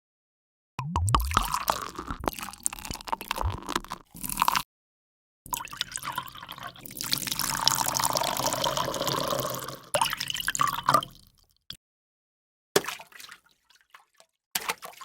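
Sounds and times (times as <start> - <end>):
water dripping and splashing: 0.8 - 4.1, 12.8 - 15.0.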